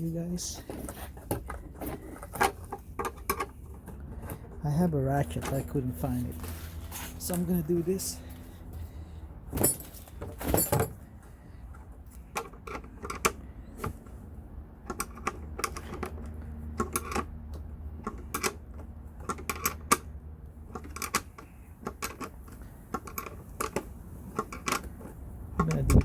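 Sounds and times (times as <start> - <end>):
metal clatter: 9.5 - 11.1.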